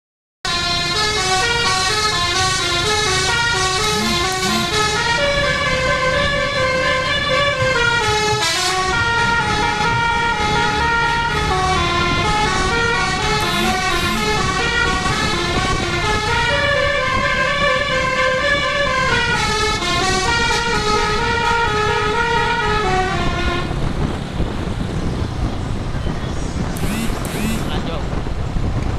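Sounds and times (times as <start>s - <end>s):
musical air horn melody: 2.3s - 5.5s, 13.3s - 15.8s, 26.8s - 27.7s.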